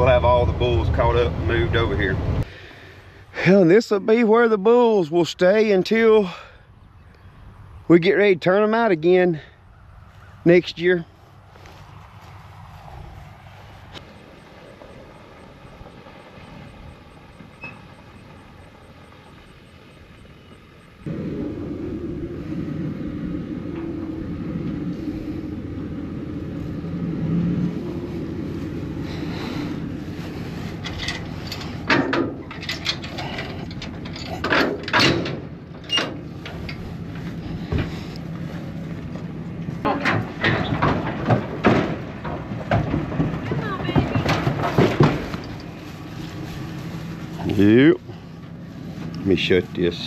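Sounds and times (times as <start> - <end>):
vehicle engine running: 11.0 - 50.0
sharp metal clanks and rattles: 30.7 - 36.8, 39.8 - 45.7.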